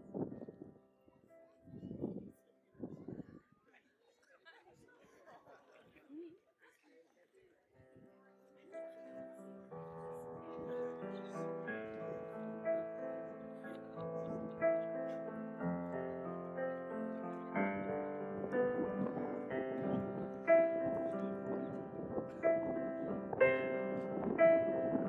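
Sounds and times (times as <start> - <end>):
slow piano chords: 0.0 - 1.9, 8.7 - 25.0.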